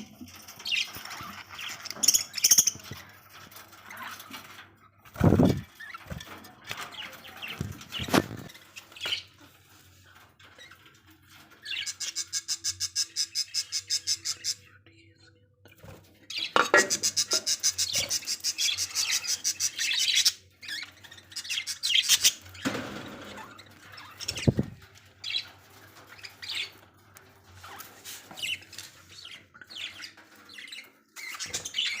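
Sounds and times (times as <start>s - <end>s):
budgerigars chirping and squawking: 0.0s - 9.7s, 10.4s - 14.8s, 15.8s - 32.0s
rustling: 22.5s - 29.3s.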